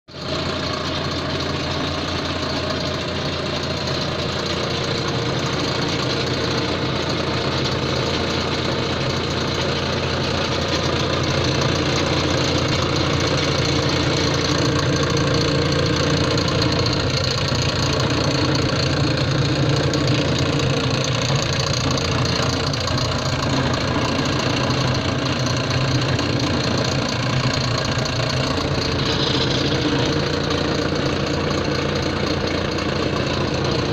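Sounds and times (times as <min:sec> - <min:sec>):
drill press motor hum: 0:00.2 - 0:33.9
mechanical rattle: 0:00.2 - 0:33.9.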